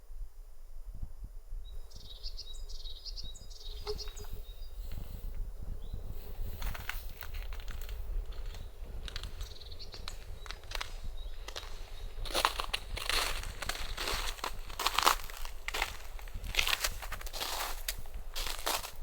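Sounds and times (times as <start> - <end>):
wind buffeting microphone: 0.9 - 19.0
small bird chirping: 1.7 - 18.5
sharp crackles and clicks: 6.5 - 18.9.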